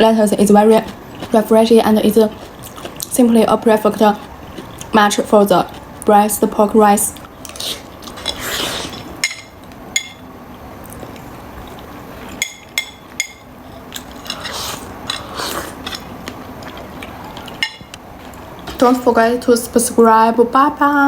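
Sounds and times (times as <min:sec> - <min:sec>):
utensils clinking against a bowl: 0:07.2 - 0:10.2, 0:12.3 - 0:15.3, 0:17.3 - 0:18.0.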